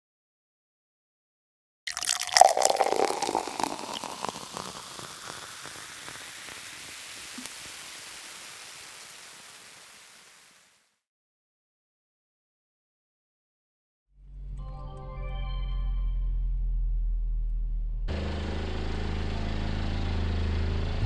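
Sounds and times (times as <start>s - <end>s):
liquid pouring and splashing: 1.9s - 10.8s.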